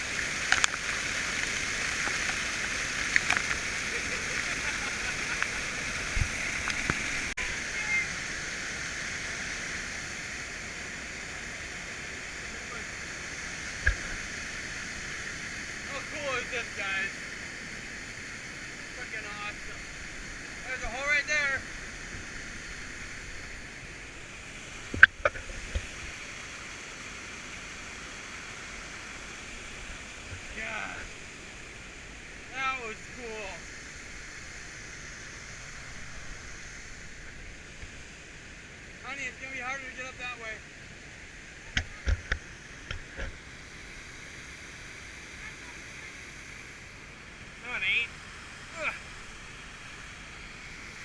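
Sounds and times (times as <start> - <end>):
water pouring over spillway: 0.0 - 17.2.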